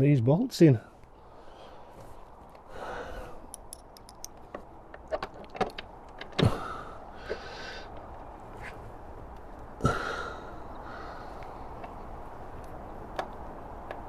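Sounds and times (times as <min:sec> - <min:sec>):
metal bolts clinking: 0:03.5 - 0:06.4.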